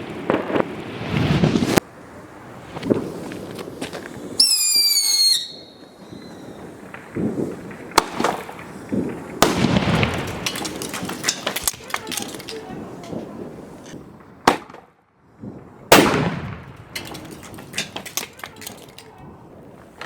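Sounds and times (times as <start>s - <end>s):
firework bangs: 0.0s - 20.0s
firework whistle: 4.4s - 6.7s
crackling and clicks: 6.8s - 14.0s, 16.6s - 20.0s.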